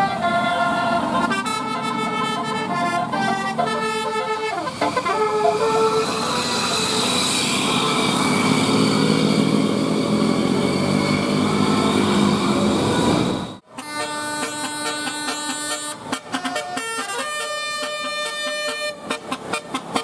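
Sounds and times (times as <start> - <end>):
musical air horn playing a tune: 0.0 - 8.8, 13.6 - 20.0
steady vehicle noise: 0.0 - 20.0.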